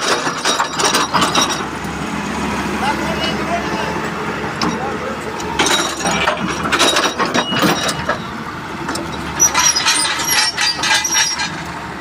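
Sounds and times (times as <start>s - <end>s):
metal clanks and knocks: 0.0s - 1.8s, 4.6s - 11.7s
engine running: 0.0s - 12.0s.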